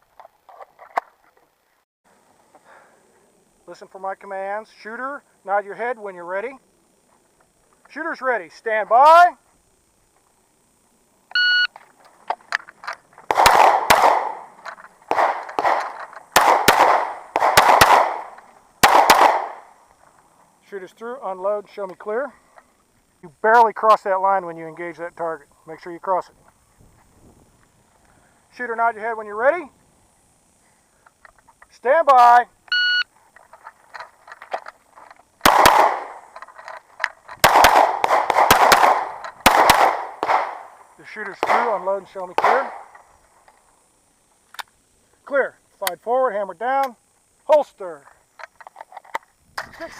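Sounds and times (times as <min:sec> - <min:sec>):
handgun shots with echo: 0:13.3 - 0:14.5, 0:15.1 - 0:19.6, 0:35.4 - 0:36.2, 0:37.4 - 0:40.7, 0:42.4 - 0:42.9.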